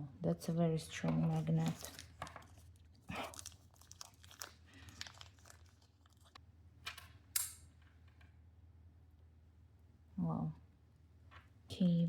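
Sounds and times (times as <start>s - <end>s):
packaging rustling and crinkling: 0.9s - 6.4s.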